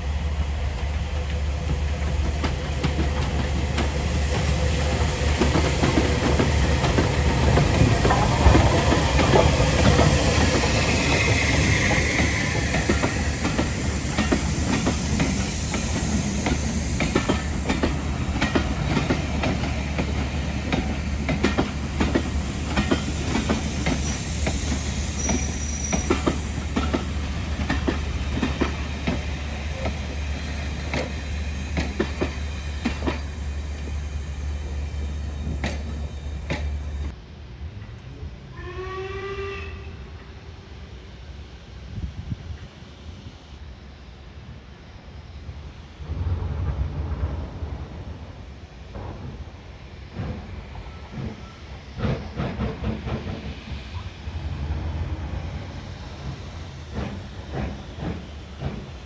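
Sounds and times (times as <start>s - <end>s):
train passing with rushing hiss: 0.0s - 59.0s
wheels clicking over rail joints: 16.4s - 37.1s.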